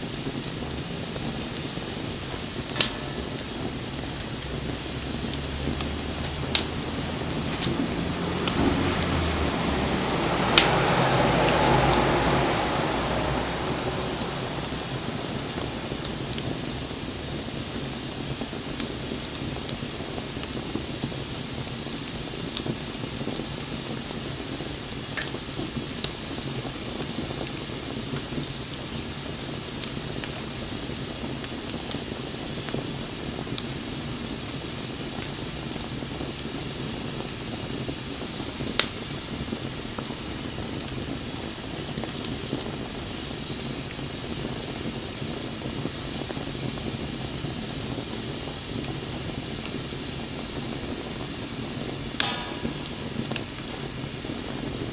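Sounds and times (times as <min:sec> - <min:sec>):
campfire hissing: 0:00.0 - 0:54.9
fire crackles and pops: 0:00.0 - 0:54.9.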